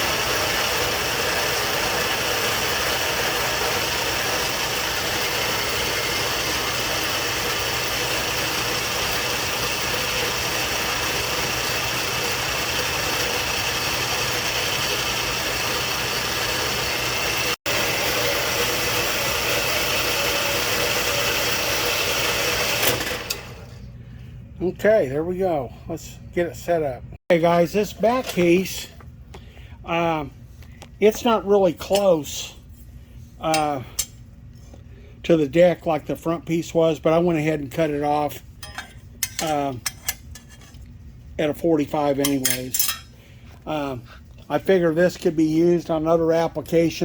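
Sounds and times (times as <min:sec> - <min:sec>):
metal-cutting saw cutting steel: 0:00.0 - 0:23.4, 0:38.6 - 0:40.7, 0:42.2 - 0:43.1.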